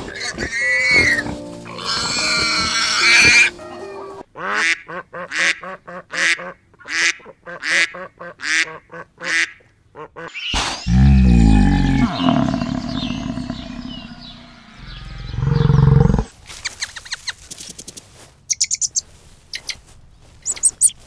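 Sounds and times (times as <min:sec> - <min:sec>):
waterfowl calls rising in pitch: 0:00.6 - 0:03.5
loud deep bird call: 0:10.3 - 0:16.3.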